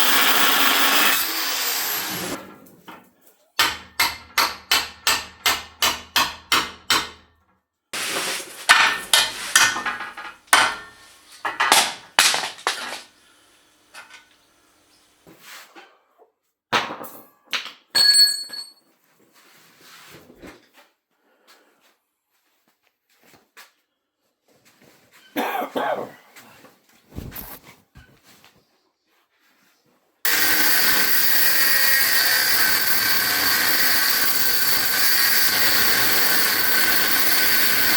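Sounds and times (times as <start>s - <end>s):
hammer on steel: 3.6s - 7.3s.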